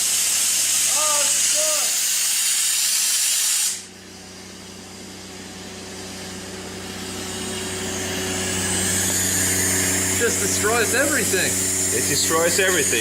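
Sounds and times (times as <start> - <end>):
arc gouging air blast hiss: 0.0 - 4.0
diesel generator humming: 3.9 - 13.0.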